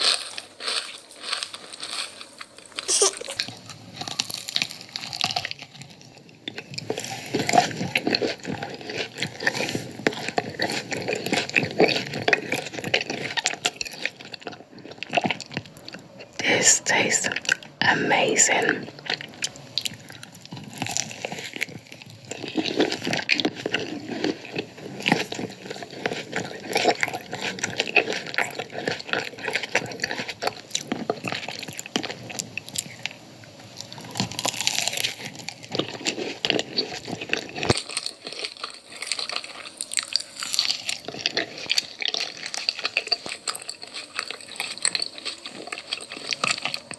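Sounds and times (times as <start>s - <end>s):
chewing crunchy food: 0.0s - 46.9s
wet mouth sounds: 2.8s - 3.5s.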